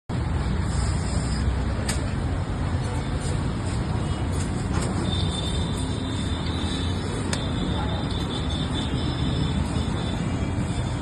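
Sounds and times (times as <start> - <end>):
sharp click: 1.8 - 2.1.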